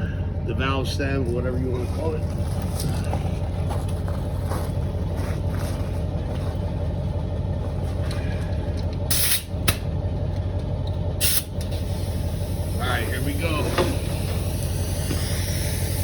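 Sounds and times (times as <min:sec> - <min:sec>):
air compressor humming: 0:00.0 - 0:16.0
air hissing bursts: 0:09.1 - 0:09.8, 0:11.2 - 0:16.0.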